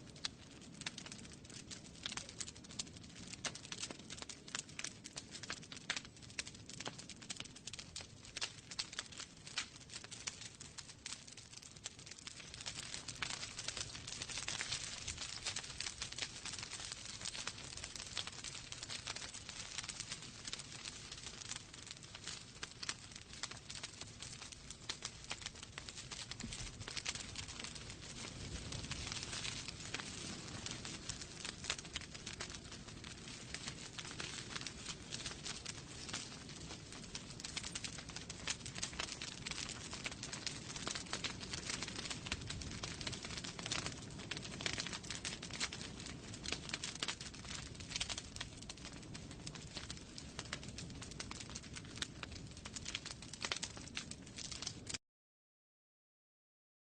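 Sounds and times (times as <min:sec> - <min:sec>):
wood fire crackling: 0:00.0 - 0:55.0
soft hiss of flames: 0:12.1 - 0:54.6.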